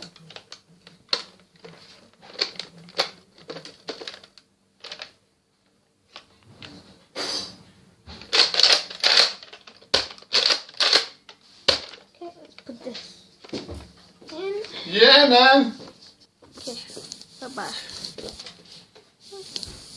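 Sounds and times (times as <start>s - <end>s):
toy blaster plastic clicks and rattles: 0.0s - 5.2s, 8.3s - 12.0s.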